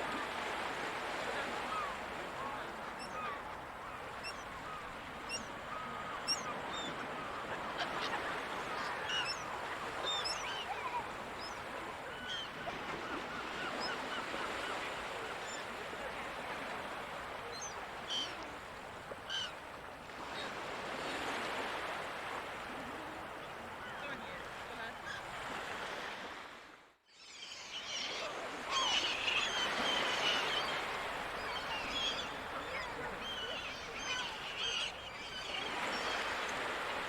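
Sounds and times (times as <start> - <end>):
surf washing: 0.0 - 26.8, 27.8 - 37.0
seagulls calling: 1.6 - 15.7, 27.2 - 37.0.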